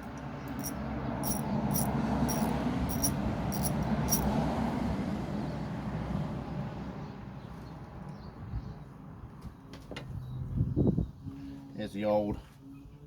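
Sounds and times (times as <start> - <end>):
metallic clicks of hand tools: 0.1 - 4.3.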